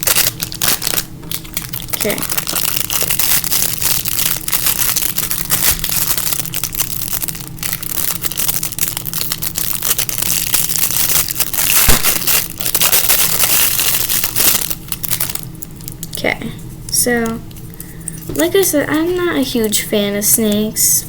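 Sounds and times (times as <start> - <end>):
plastic packaging crinkling: 0.0 - 16.2.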